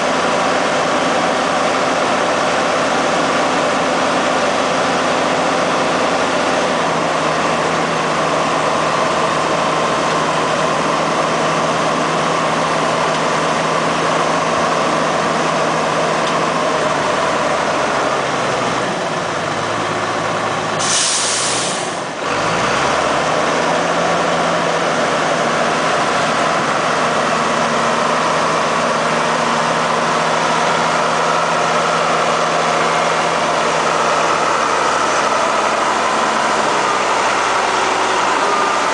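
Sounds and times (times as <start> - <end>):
diesel engine running: 0.0 - 38.9
air brake hiss: 20.8 - 22.1.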